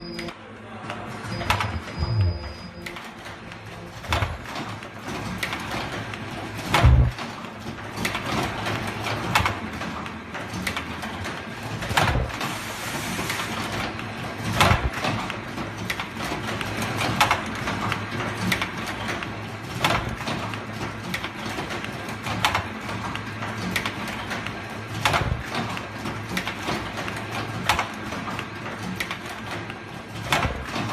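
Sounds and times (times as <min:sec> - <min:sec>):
steady machine noise: 0:01.2 - 0:04.8, 0:05.7 - 0:07.2, 0:11.7 - 0:13.9
machine mechanical stroke: 0:06.7 - 0:07.2, 0:11.9 - 0:13.9.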